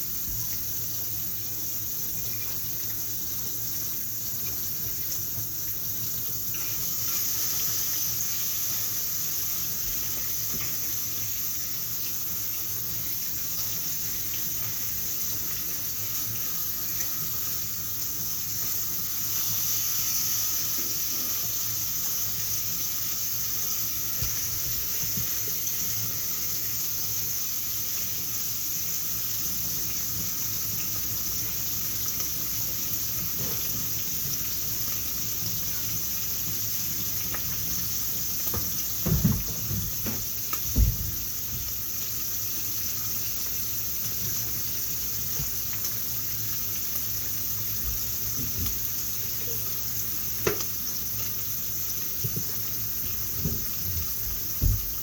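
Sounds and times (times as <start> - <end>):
tap running into sink: 9.8 - 11.4, 24.0 - 25.8, 33.2 - 34.6, 37.1 - 42.0, 45.3 - 46.0, 47.7 - 49.1, 50.4 - 51.3, 52.2 - 55.0.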